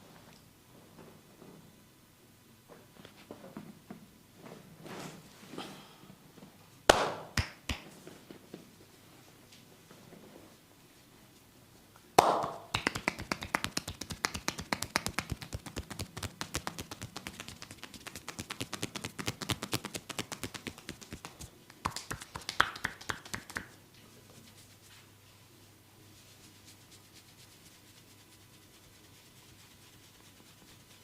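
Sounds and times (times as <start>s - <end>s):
hand slap: 6.9s - 7.9s, 12.2s - 23.8s
sharp hand taps: 12.2s - 21.2s.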